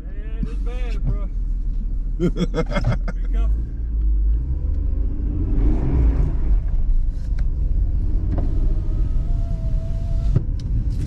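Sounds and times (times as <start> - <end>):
car engine and tyres rumbling: 0.0 - 11.0.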